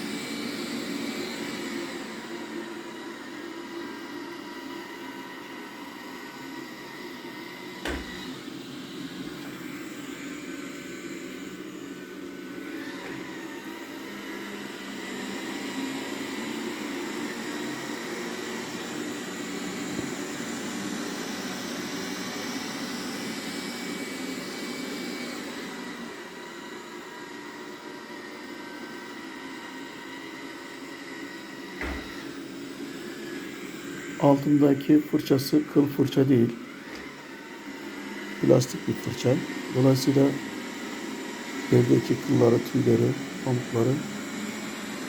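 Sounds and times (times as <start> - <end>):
robot vacuum running on carpet: 0.0 - 45.0
knock: 7.8 - 8.1, 31.8 - 32.1.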